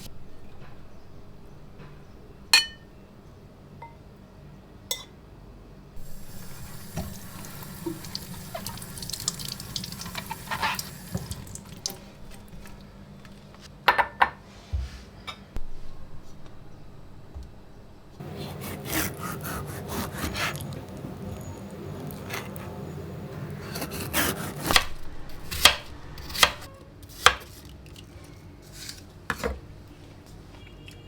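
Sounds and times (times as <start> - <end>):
dishes clinking: 2.6 - 2.9, 4.9 - 5.2
tap water running into sink: 6.0 - 12.8.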